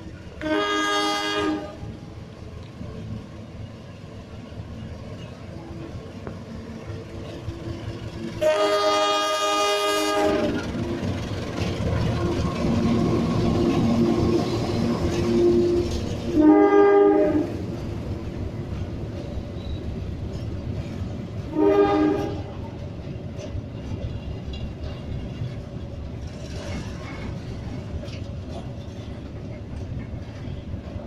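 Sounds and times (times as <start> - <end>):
train rumble: 0.0 - 31.0
train horn blasts: 0.4 - 1.9, 8.4 - 10.7, 15.2 - 17.6, 21.5 - 22.6.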